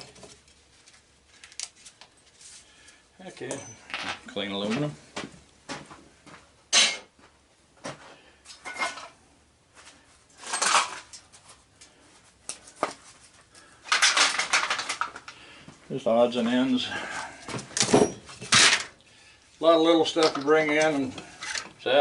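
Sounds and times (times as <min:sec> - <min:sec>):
scrap metal clattering: 0:10.4 - 0:11.1, 0:17.9 - 0:18.9.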